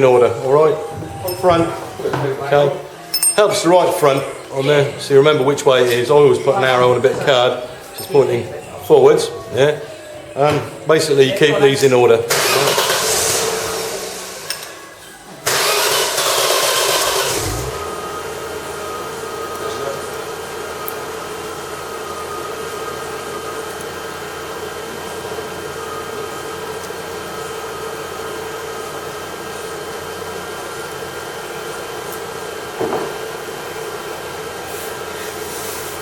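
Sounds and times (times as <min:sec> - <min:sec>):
machine hum: 0:00.0 - 0:34.7.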